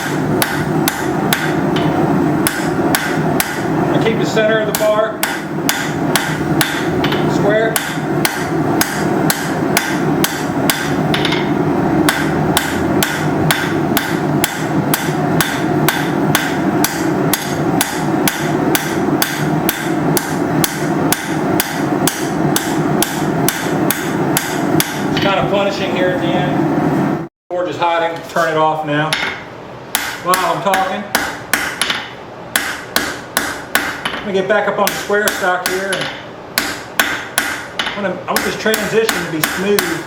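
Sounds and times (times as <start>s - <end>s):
hammer striking steel on anvil: 0.0s - 3.7s, 4.7s - 25.4s, 29.1s - 40.0s
steady running noise: 0.0s - 27.3s.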